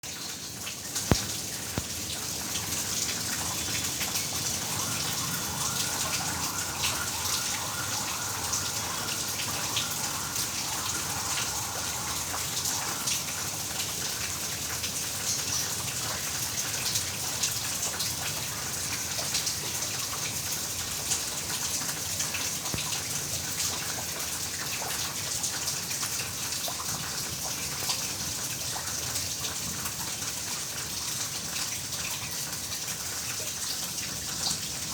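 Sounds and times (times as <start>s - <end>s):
heavy rain falling: 0.2s - 26.4s.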